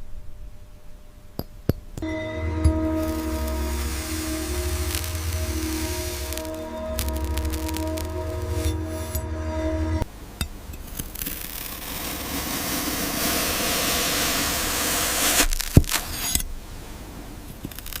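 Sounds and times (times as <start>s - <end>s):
background music: 2.0s - 10.1s.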